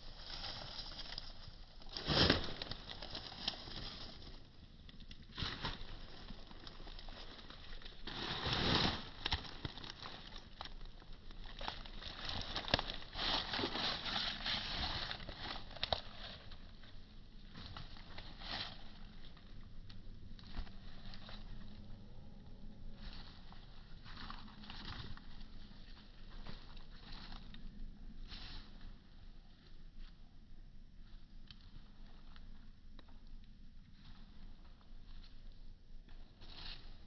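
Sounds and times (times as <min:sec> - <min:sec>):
rustling and crackling: 0:00.0 - 0:22.1.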